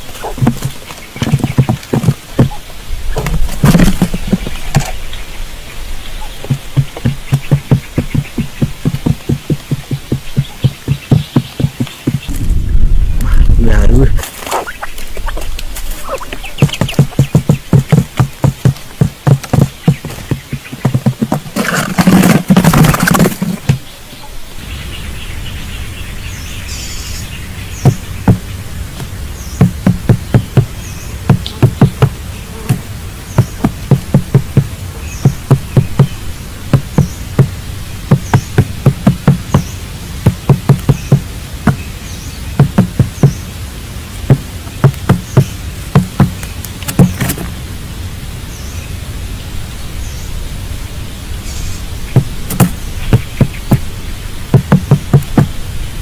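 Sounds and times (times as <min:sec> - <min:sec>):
loud rustling: 0:14.2 - 0:23.8
sharp clicks and taps: 0:31.3 - 0:32.8, 0:42.6 - 0:43.2, 0:44.3 - 0:47.5, 0:52.2 - 0:53.8, 0:54.6 - 0:55.5.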